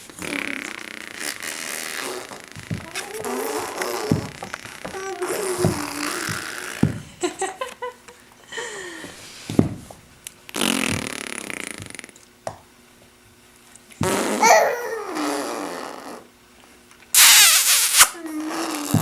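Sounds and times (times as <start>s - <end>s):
raspberry-like sputtering: 0.2s - 6.9s, 17.2s - 19.0s
breathy hissing: 8.5s - 9.6s, 17.2s - 19.0s.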